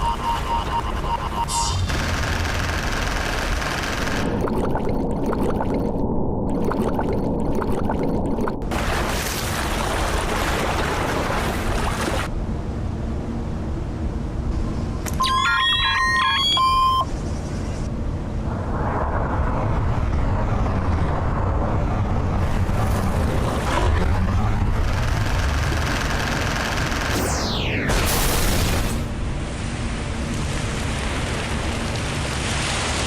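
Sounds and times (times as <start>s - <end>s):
short held beeps: 0.0s - 1.8s, 15.1s - 17.1s
loud deep noise bed: 17.3s - 29.9s.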